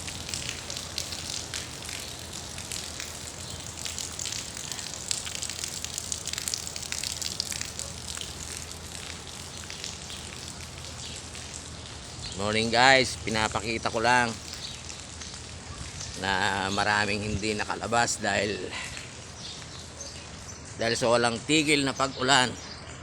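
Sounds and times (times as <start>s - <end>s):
raindrop hits: 0.0s - 18.2s
steady rain: 0.0s - 23.0s.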